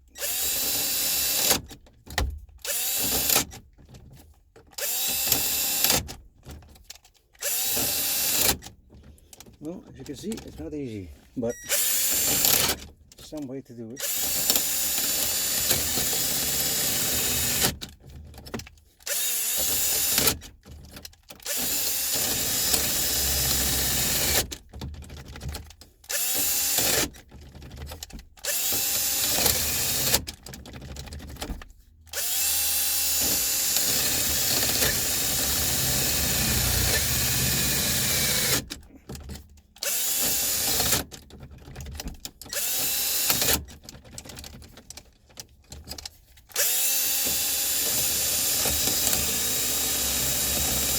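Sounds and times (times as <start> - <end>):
power drill boring into metal: 0.1 - 1.7, 2.6 - 3.6, 4.8 - 6.1, 7.4 - 8.7, 11.5 - 12.8, 14.0 - 17.8, 19.0 - 20.4, 21.4 - 24.5, 26.1 - 27.1, 28.4 - 30.2, 32.1 - 38.8, 39.8 - 41.1, 42.5 - 43.6, 46.5 - 50.9.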